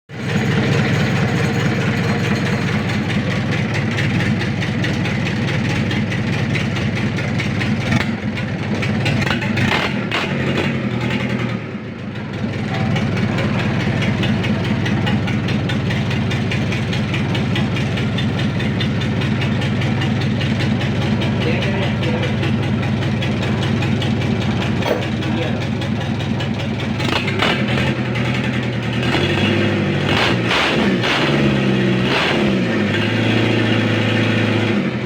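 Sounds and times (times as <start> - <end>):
ship engine running: 12.2 - 27.5.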